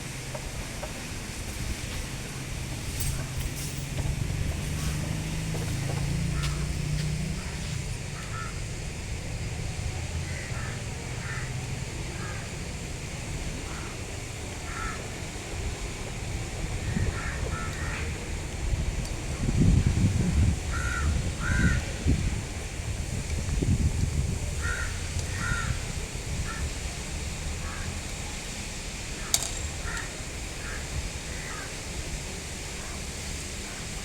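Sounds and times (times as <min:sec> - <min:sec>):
steady low rumble: 0:00.0 - 0:33.7
birds calling: 0:04.8 - 0:08.6, 0:16.8 - 0:18.2, 0:24.6 - 0:26.6.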